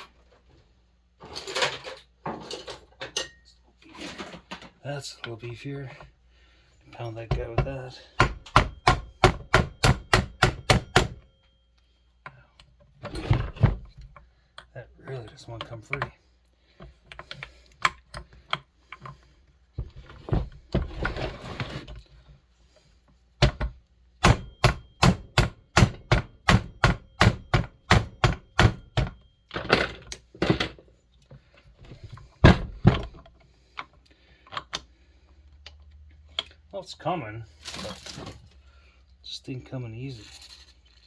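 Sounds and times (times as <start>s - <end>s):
hammer knocking on metal pin: 7.3s - 11.2s, 23.4s - 29.2s.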